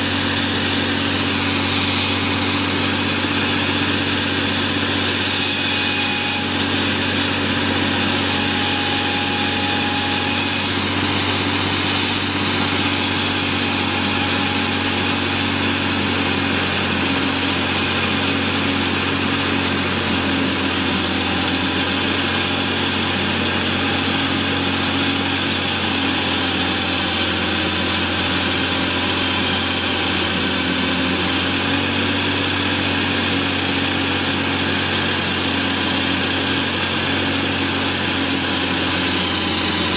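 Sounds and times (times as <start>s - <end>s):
concrete saw diesel engine: 0.0s - 39.9s.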